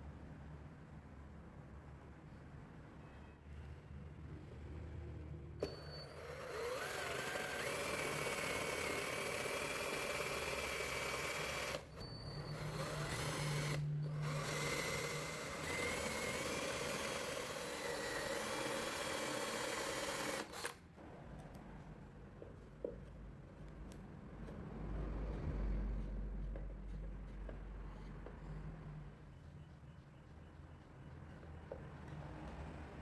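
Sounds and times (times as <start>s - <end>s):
power tool motor whining: 5.6s - 20.8s.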